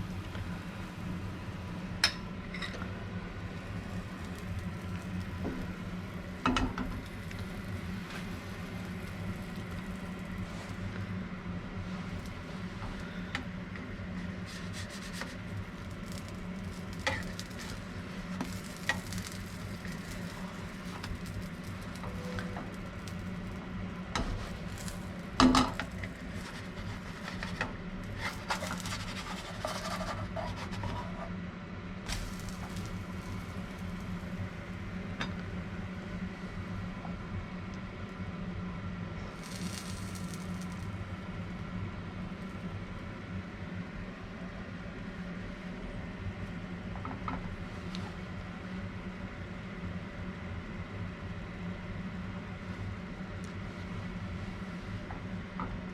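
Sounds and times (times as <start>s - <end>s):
steady low hum: 0.0s - 55.9s
pancakes sizzling in a pan: 3.5s - 11.2s, 11.8s - 31.1s, 32.1s - 35.3s, 39.2s - 41.0s
utensil scraping and clicking on pan: 14.5s - 22.8s, 24.2s - 31.3s.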